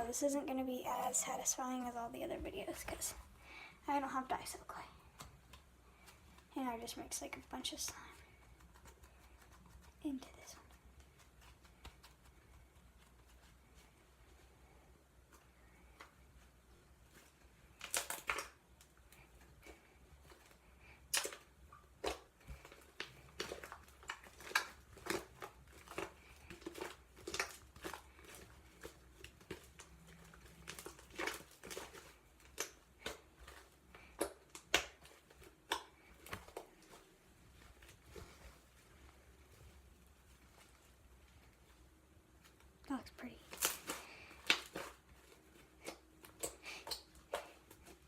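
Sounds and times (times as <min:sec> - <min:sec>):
slime squished by hand: 0:19.6 - 0:38.6.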